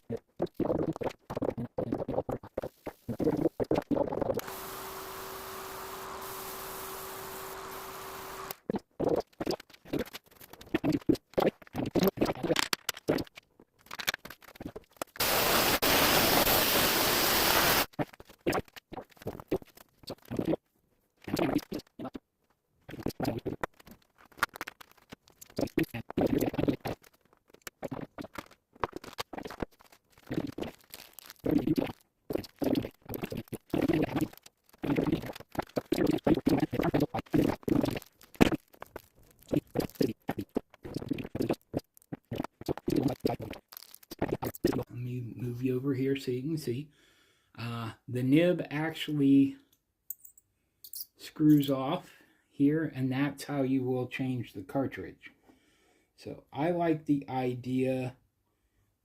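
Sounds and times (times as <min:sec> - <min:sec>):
small parts clicking and rustling: 0:11.6 - 0:15.2, 0:21.1 - 0:44.8, 0:49.7 - 0:51.8
steady hiss: 0:15.2 - 0:17.9.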